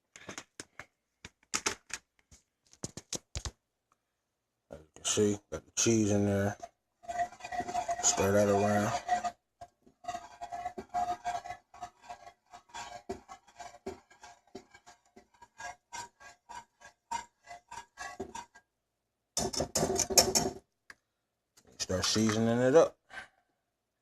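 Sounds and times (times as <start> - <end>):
spoon scraping a pot: 5.8 - 18.7, 19.4 - 20.6, 21.9 - 22.5.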